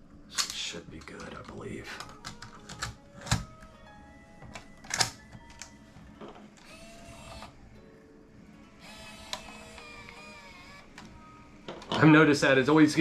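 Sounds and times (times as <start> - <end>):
tape loading motor whirring: 1.2 - 7.8, 8.6 - 12.0.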